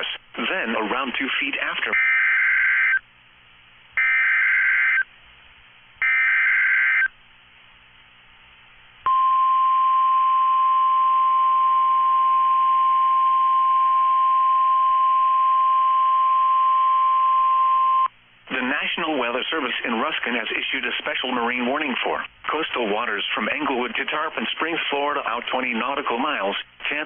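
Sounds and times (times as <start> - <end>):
steady warning alarm tone: 1.9 - 3.0, 4.0 - 5.0, 6.0 - 7.1.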